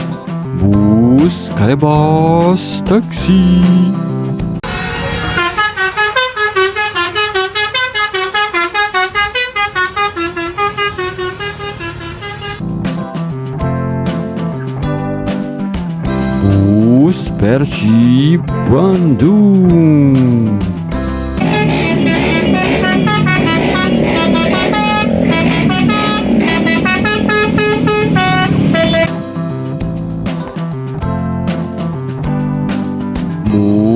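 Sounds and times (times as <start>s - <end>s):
background music: 0.0s - 4.7s, 12.6s - 33.9s
bus horn honking melody: 4.6s - 12.6s, 21.4s - 29.1s.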